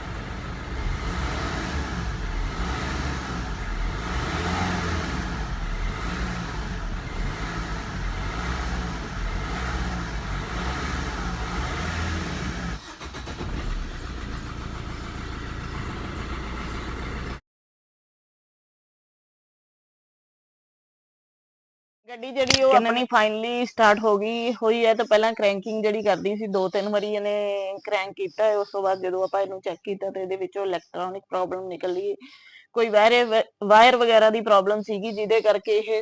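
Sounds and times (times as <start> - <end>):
car engine droning: 0.0 - 17.4.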